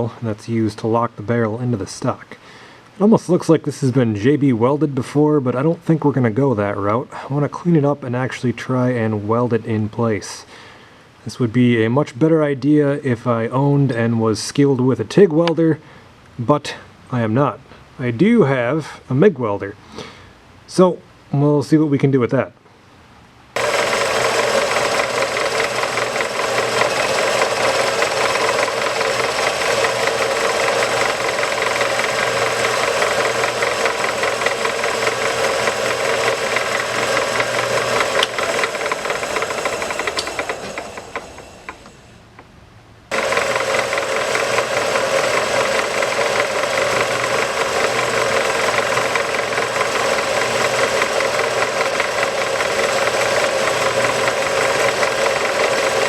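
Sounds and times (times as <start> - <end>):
welder arc crackling: 23.6 - 42.2, 43.1 - 56.0.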